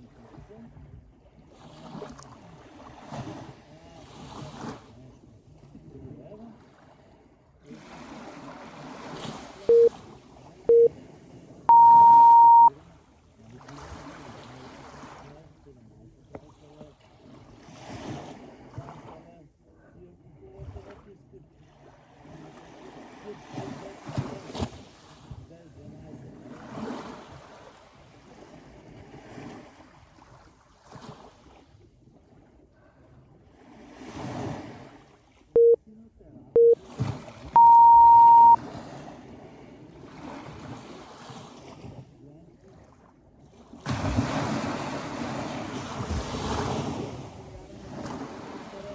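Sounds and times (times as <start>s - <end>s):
sea waves washing: 6.4s - 10.9s, 11.7s - 12.7s, 43.7s - 48.9s
interval timer beeps: 9.7s - 9.9s, 10.7s - 10.9s, 11.7s - 12.7s, 35.6s - 35.8s, 36.6s - 36.8s, 37.6s - 38.6s.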